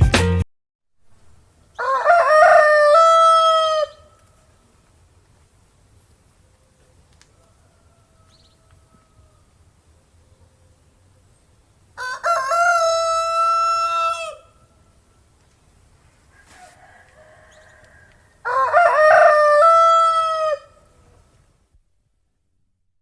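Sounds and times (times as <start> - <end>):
rooster crowing: 1.8 - 4.1, 7.2 - 9.6, 12.0 - 14.7, 16.3 - 21.0.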